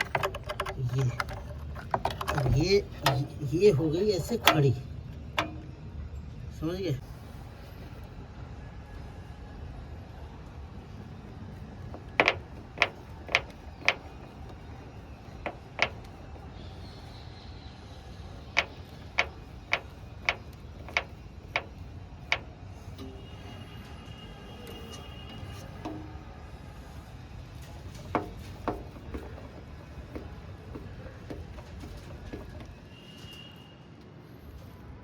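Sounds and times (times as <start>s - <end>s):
washing machine knocking: 11.9s - 16.1s, 18.5s - 22.6s.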